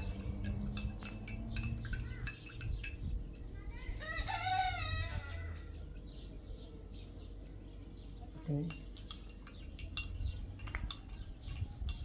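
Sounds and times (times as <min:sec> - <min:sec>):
light clinks: 0:00.0 - 0:03.7, 0:08.6 - 0:12.0
rooster crowing: 0:04.0 - 0:05.7.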